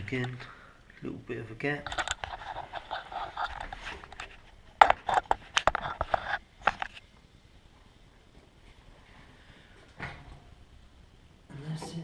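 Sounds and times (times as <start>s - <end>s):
sharp clicks and knocks: 3.4s - 7.0s.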